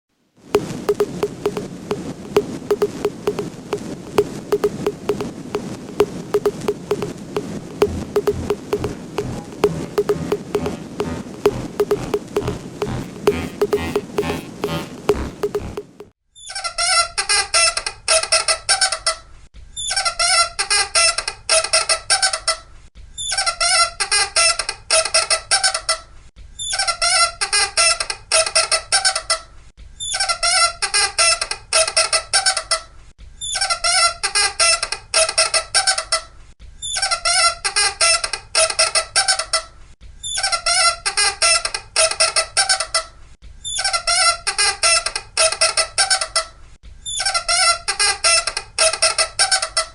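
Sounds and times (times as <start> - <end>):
high-pitched squeaking: 7.8 - 16.0.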